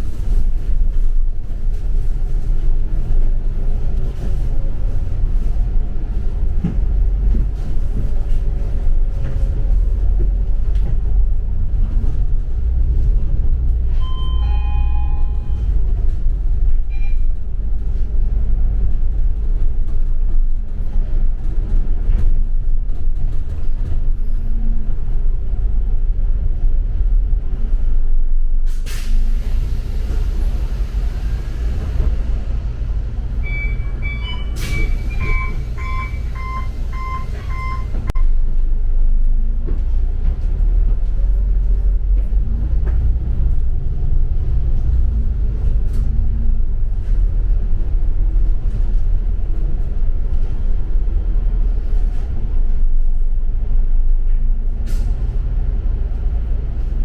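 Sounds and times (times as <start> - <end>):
bus engine and road rumble: 0.0 - 57.0
repeated beeps: 33.4 - 38.0.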